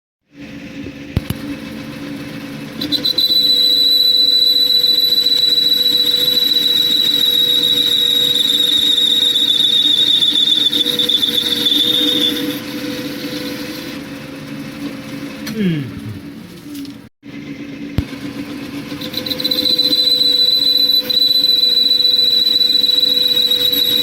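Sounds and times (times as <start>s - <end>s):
lathe motor hum: 0.3s - 24.0s
cutting tool squealing on steel: 2.8s - 14.2s, 18.8s - 24.0s.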